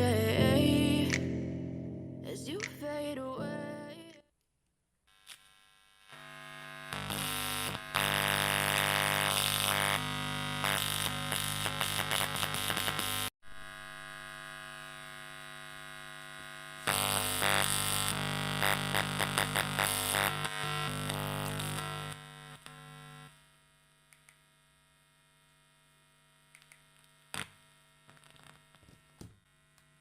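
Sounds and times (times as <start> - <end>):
instrumental music: 0.0 - 4.2.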